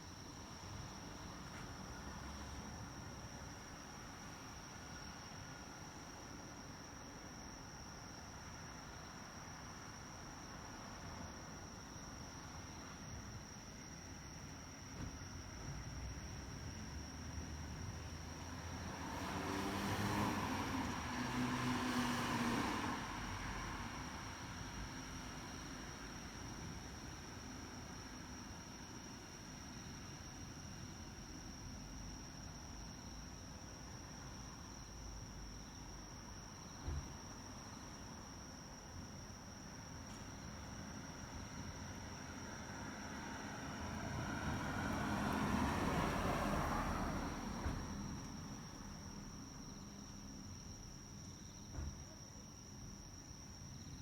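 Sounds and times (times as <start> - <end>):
vehicle passing by: 17.6 - 24.5, 42.6 - 49.1
low thump: 51.7 - 52.0.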